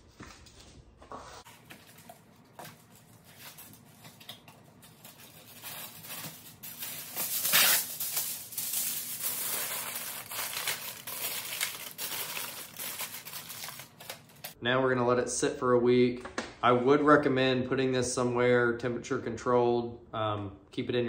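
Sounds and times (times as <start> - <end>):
aluminum foil crinkling: 1.6 - 14.6.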